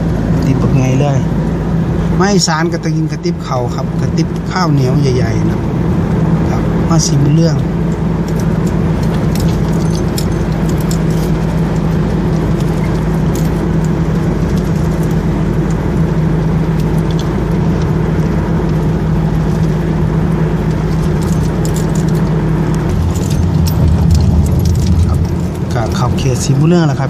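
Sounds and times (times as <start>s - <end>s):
engine and tyre drone: 0.0s - 27.0s
low hum: 0.0s - 27.0s
light ticking rattles: 6.5s - 27.0s.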